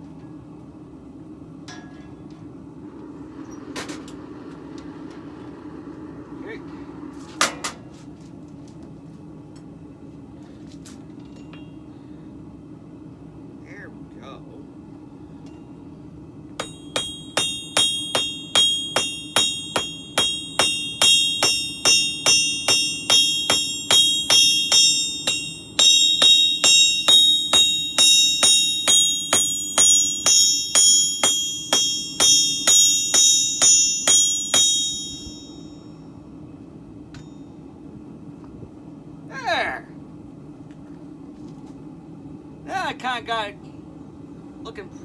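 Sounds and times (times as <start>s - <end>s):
hammer ringing on sword blade: 16.6s - 35.8s.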